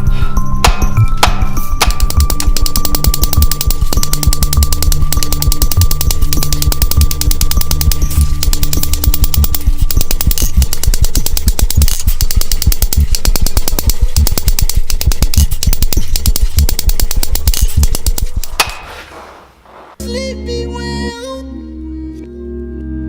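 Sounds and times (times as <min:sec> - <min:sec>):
power hammer striking steel: 0:00.6 - 0:19.2
steady machine hum: 0:01.9 - 0:18.4.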